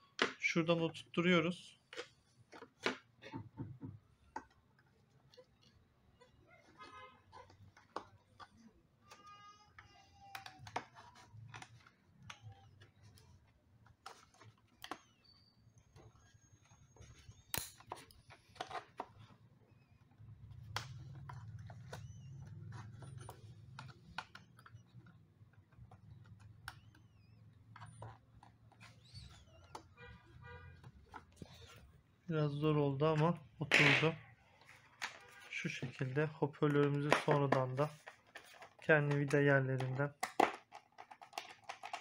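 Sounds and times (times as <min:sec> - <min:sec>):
plastic and metal parts knocking: 0:01.9 - 0:05.8, 0:33.8 - 0:42.0.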